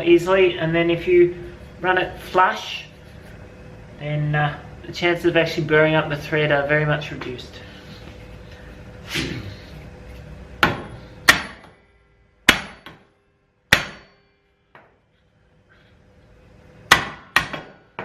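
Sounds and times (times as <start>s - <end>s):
hammer striking metal: 10.6s - 11.8s, 12.4s - 14.9s, 16.9s - 18.0s.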